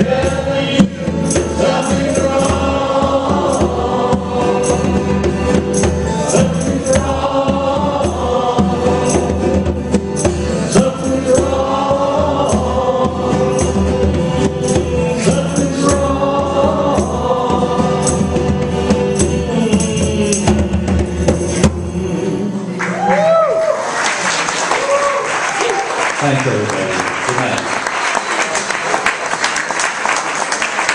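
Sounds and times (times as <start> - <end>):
conga drums: 0.0 - 22.2
voices singing in harmony: 0.0 - 23.7.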